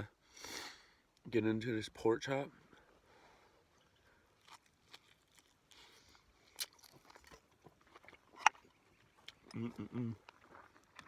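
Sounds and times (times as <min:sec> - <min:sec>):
person chewing meat: 0:04.3 - 0:11.0.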